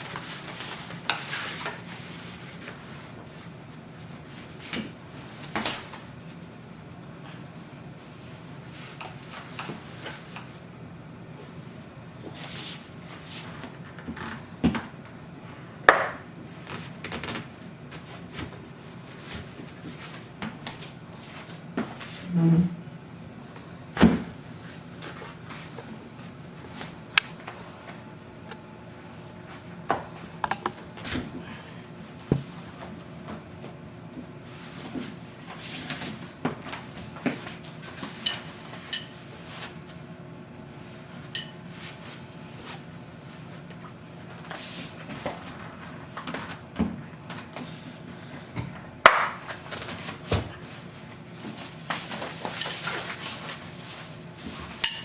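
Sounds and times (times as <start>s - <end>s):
plastic and metal parts knocking: 30.4s - 30.8s.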